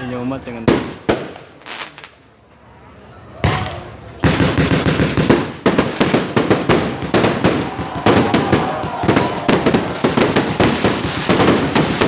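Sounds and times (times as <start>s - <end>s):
fireworks cracking and popping: 3.5s - 12.0s.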